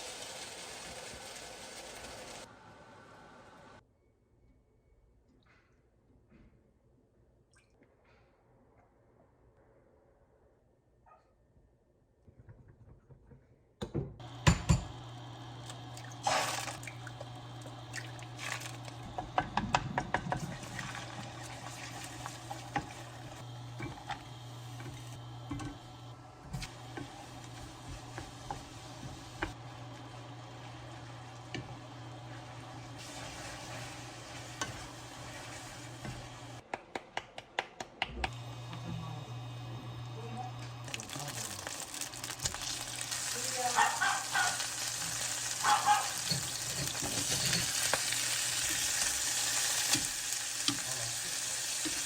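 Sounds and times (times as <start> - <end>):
liquid pouring and stirring: 16.0 - 19.2, 20.0 - 24.0
utensils and dishes clinking: 45.7 - 48.7.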